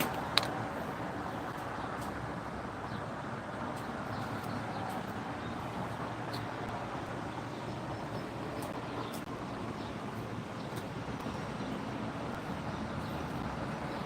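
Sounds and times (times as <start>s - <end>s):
steady background noise: 0.0s - 14.0s.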